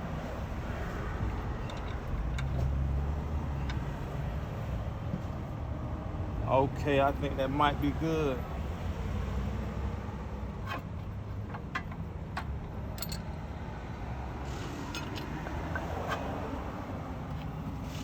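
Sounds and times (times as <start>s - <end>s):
metal tools clicking: 1.6s - 2.7s, 10.6s - 13.4s.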